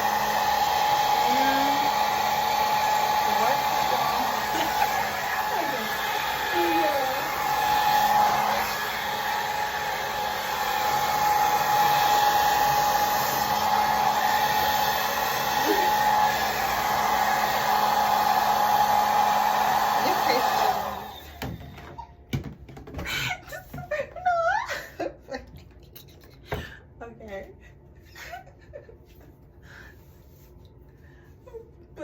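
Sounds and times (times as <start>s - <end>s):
blow dryer running: 0.0s - 22.0s.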